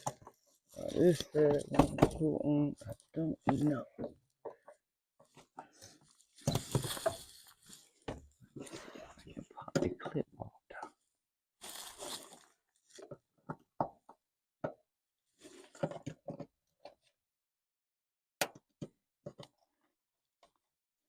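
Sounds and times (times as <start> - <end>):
rustling: 5.8 - 8.1.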